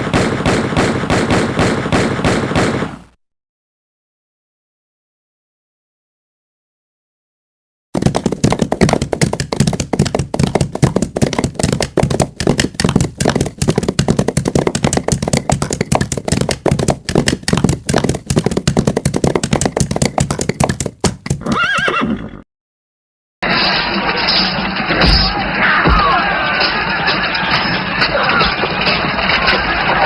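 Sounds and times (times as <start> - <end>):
horses galloping: 8.0 - 22.2
horse whinnying: 21.4 - 22.4.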